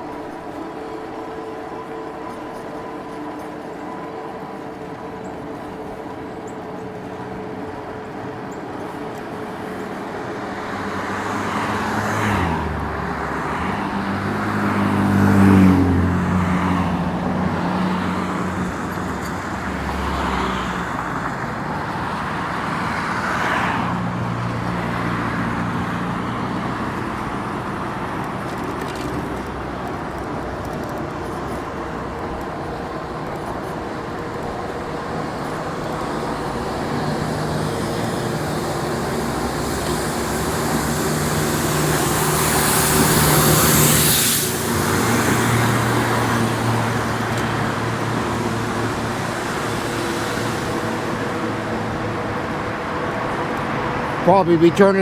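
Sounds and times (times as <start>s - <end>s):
steady road hum: 0.0s - 55.0s
vehicles passing: 0.0s - 55.0s
engine accelerating: 35.3s - 55.0s.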